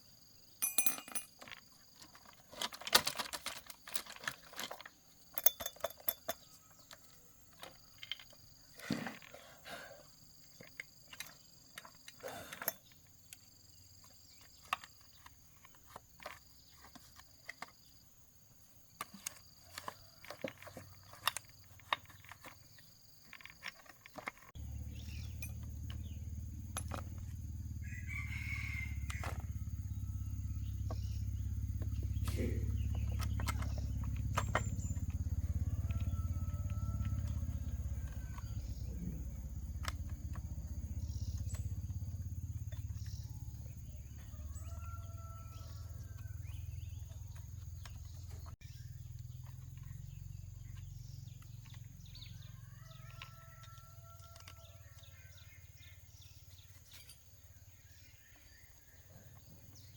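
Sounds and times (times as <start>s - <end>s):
low motor hum: 24.6s - 54.3s
rooster crowing: 27.6s - 30.6s, 35.0s - 39.4s, 43.3s - 47.0s, 52.2s - 55.6s.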